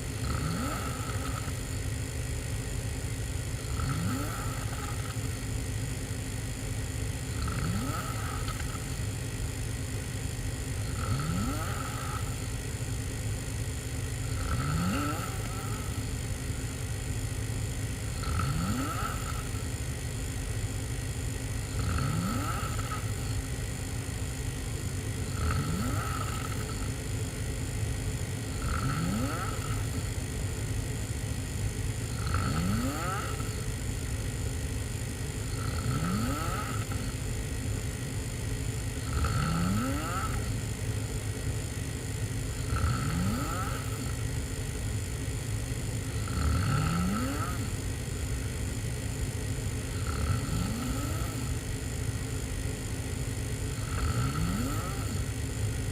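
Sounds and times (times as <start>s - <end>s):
person snoring: 0.0s - 2.3s, 3.2s - 5.8s, 7.1s - 9.8s, 10.6s - 13.1s, 14.2s - 20.1s, 21.4s - 27.5s, 28.2s - 30.3s, 32.0s - 34.1s, 35.4s - 37.4s, 38.9s - 40.8s, 42.5s - 44.5s, 46.0s - 48.5s, 49.8s - 51.8s, 53.6s - 55.9s.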